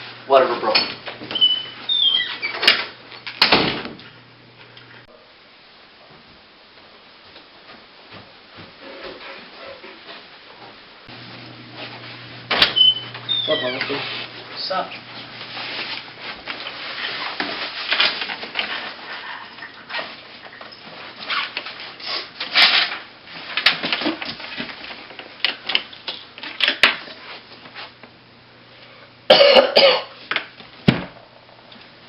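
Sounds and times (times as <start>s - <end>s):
person coughing: 29.3s - 30.2s.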